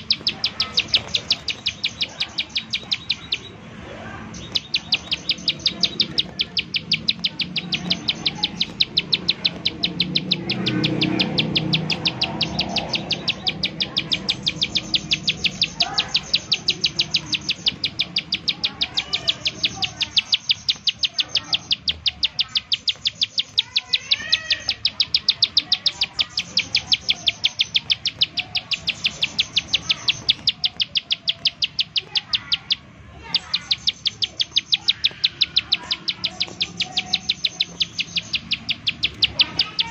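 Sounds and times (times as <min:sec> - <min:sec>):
bird giving rapid ticking call: 0:00.0 - 0:39.9
faint bird chirps: 0:00.0 - 0:39.9.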